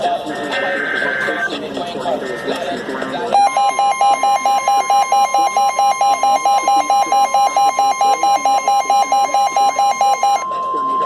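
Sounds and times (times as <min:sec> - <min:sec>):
steady alarm tone: 0:03.3 - 0:11.0
lower tone beeping: 0:03.4 - 0:11.0.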